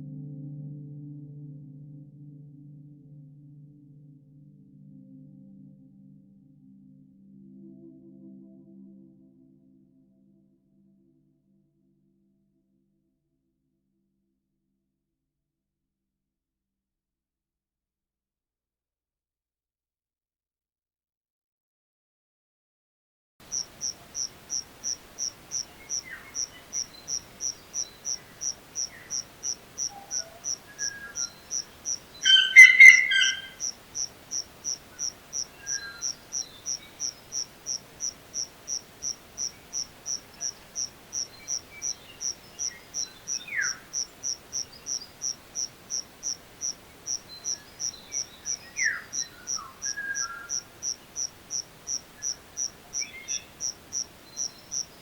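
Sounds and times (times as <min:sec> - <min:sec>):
insects chirping: 0:23.4 - 0:55.0
birds calling: 0:23.5 - 0:55.0.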